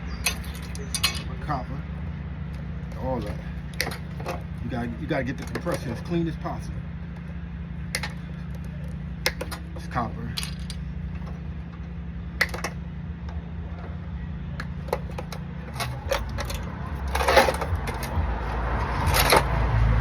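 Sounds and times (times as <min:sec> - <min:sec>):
metallic clicks and clinks: 0:00.1 - 0:01.4, 0:07.9 - 0:11.3, 0:14.6 - 0:19.6.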